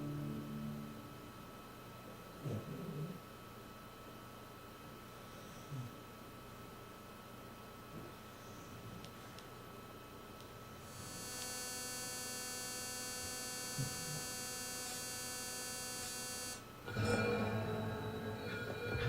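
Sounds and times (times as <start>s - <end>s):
loud mixed sound: 0.0s - 1.6s, 16.9s - 19.0s
speakers electrical buzz: 10.8s - 19.0s.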